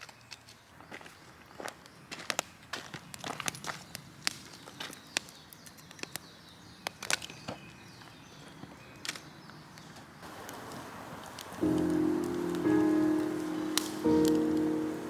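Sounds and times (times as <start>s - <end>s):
footsteps crunching on rough ground: 0.0s - 5.1s
music: 11.6s - 15.0s.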